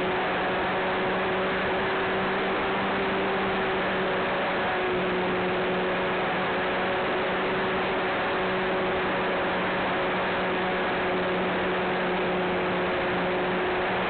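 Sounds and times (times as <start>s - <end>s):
propeller plane engine hum: 0.0s - 14.0s.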